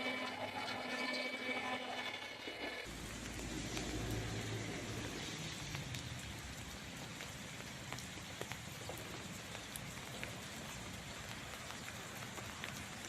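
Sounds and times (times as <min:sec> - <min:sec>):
steady rain falling: 0:02.8 - 0:13.0
raindrops ticking: 0:02.9 - 0:13.0.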